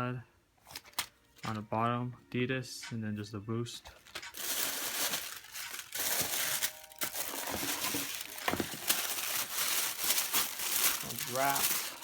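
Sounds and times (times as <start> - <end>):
paper crinkling and rustling: 3.8 - 12.0.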